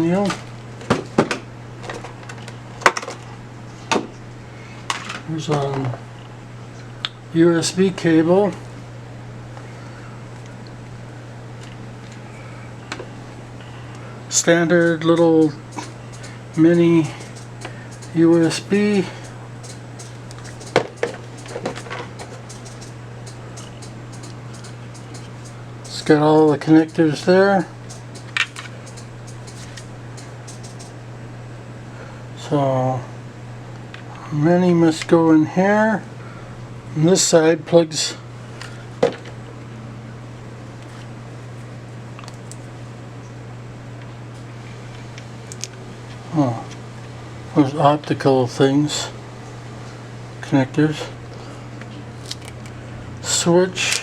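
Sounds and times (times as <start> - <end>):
steady low hum: 0.0 - 54.0
sharp clicks: 14.8 - 31.0.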